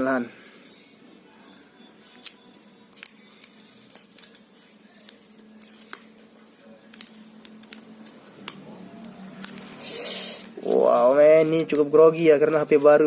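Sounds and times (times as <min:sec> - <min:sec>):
plastic packaging clicks and crinkles: 0:06.8 - 0:09.7.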